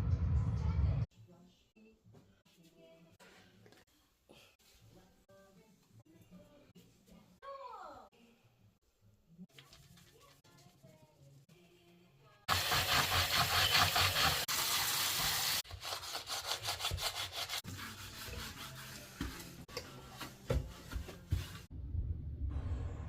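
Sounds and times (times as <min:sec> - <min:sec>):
scrubbing a sink: 0:12.5 - 0:21.7
low rumbling: 0:21.7 - 0:23.0.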